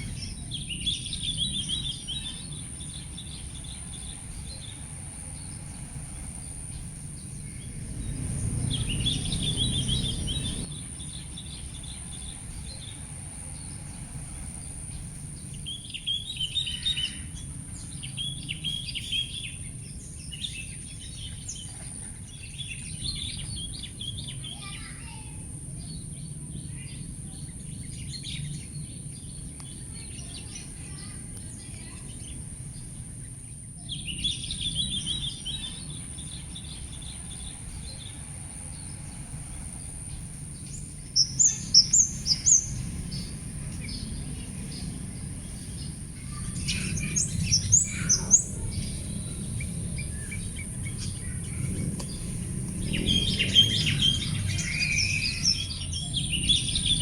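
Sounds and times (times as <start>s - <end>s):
songbirds chirping: 0.0s - 57.0s
low rumble: 3.6s - 11.2s, 42.1s - 57.0s
steady high hiss: 25.4s - 57.0s.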